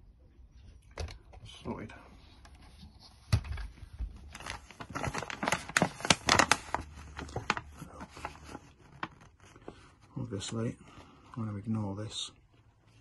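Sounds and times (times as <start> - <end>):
rustling: 2.4 - 11.2.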